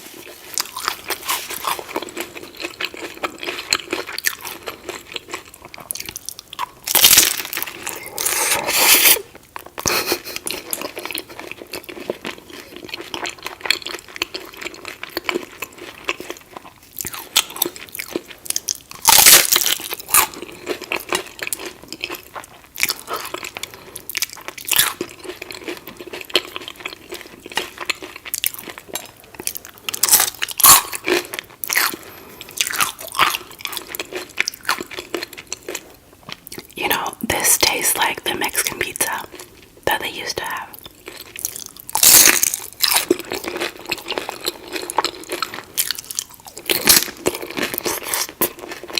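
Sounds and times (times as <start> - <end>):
crackly chewing: 0.0 - 48.9
crunching bites of taco shell: 0.5 - 10.0, 10.6 - 36.8, 40.8 - 48.9.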